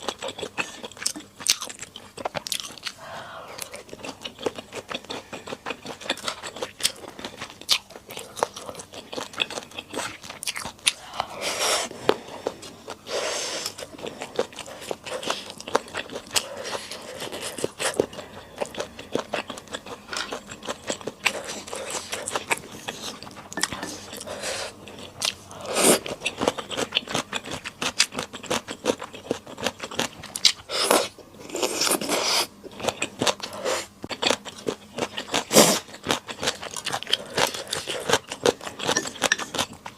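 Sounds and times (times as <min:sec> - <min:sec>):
person chewing and biting food: 0:00.0 - 0:03.0, 0:03.6 - 0:39.9.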